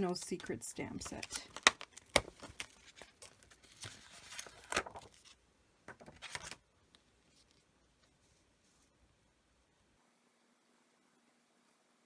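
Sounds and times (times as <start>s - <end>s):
paper sheets rustling: 0.0s - 6.6s.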